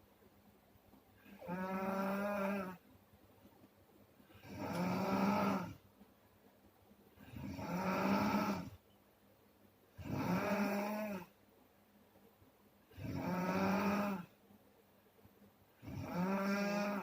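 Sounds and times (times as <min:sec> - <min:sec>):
person snoring: 0:01.3 - 0:02.8, 0:04.3 - 0:05.8, 0:07.2 - 0:08.8, 0:10.0 - 0:11.3, 0:13.0 - 0:14.3, 0:15.8 - 0:17.0.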